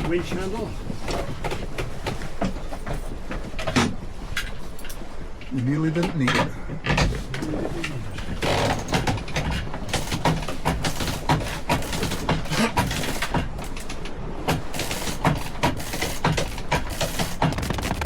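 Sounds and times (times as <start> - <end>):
sail cracking and slapping: 7.0 - 18.0.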